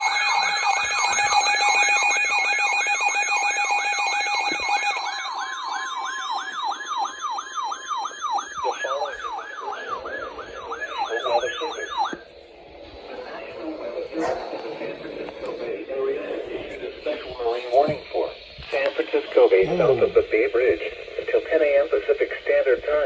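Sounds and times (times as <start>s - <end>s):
electronic siren yelping: 0.0s - 13.5s
steady high tones: 0.0s - 21.4s.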